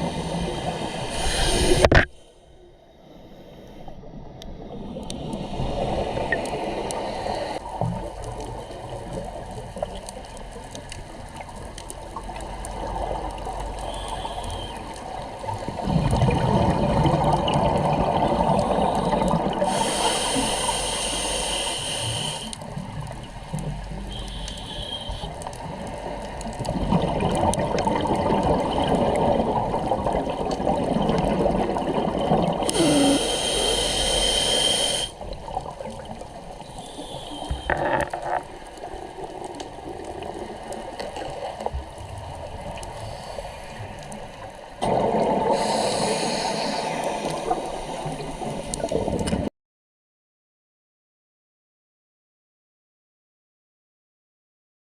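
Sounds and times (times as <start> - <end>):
regulator air hissing: 0.0 - 2.1, 19.7 - 22.6, 24.1 - 25.3, 32.7 - 35.2, 45.6 - 48.1
exhaled bubbles gurgling: 4.1 - 49.5.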